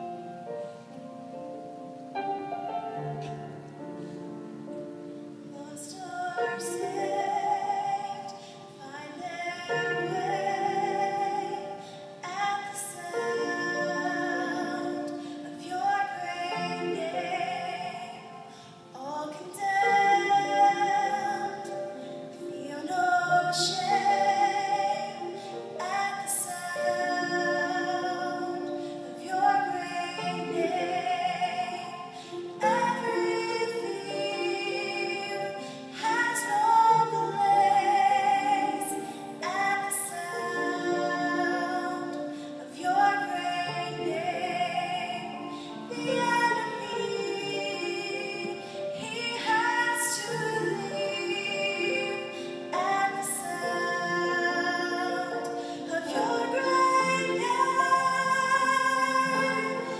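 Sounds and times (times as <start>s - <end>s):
choir singing a worship song: 5.5s - 59.9s
breaths between sung lines: 18.4s - 18.9s.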